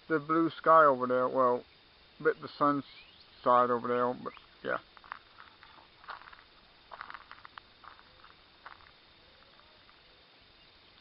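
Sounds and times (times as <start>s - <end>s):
low steady outdoor hiss: 0.0s - 11.0s
faint rustles and clicks: 4.4s - 10.2s.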